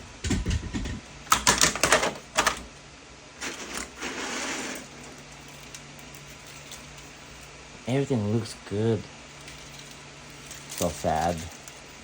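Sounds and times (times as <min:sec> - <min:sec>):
scraping rustle: 0:03.4 - 0:07.7, 0:09.2 - 0:12.0.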